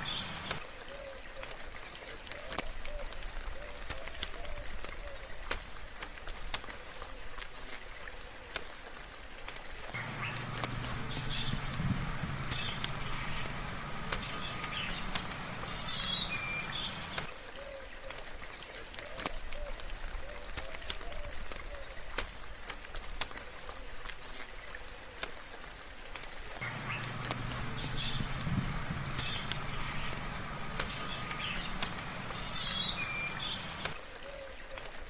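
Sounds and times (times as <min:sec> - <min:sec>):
birds chirping: 0:00.0 - 0:06.0, 0:09.9 - 0:18.2, 0:26.6 - 0:34.8
sharp drip ticks: 0:00.0 - 0:35.0
steady rain: 0:00.0 - 0:35.0
low steady drone: 0:10.0 - 0:17.3, 0:26.6 - 0:34.0.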